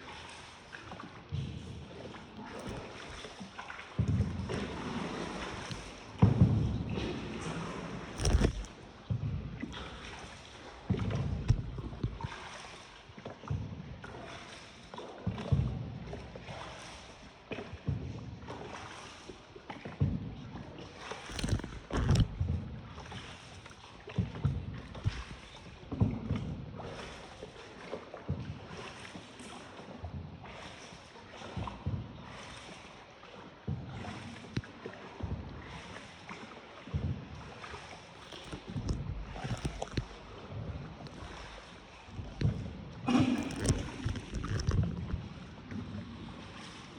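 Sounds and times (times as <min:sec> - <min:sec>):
paddled boat on water: 0:00.0 - 0:46.9
water washing: 0:02.2 - 0:13.0, 0:21.2 - 0:22.4, 0:38.1 - 0:46.6.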